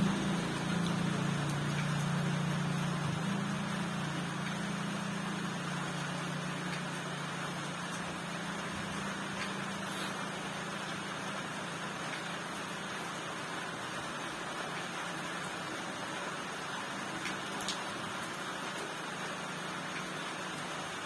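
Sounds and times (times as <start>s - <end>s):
low motor hum: 0.0s - 12.9s
steady rain hiss: 0.0s - 21.0s.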